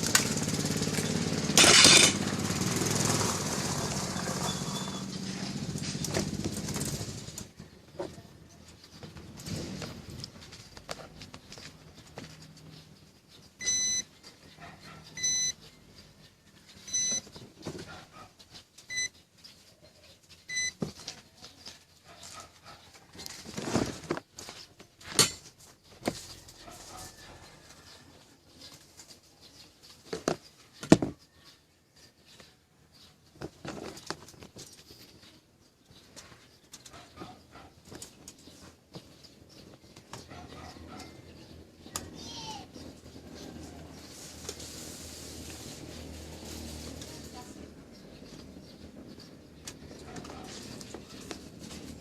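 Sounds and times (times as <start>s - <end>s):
handling knocks and clatter: 0.0s - 2.4s, 23.1s - 26.5s
short electronic beeps: 13.6s - 14.1s, 15.2s - 15.6s, 16.9s - 17.3s, 18.9s - 19.2s, 20.5s - 20.8s.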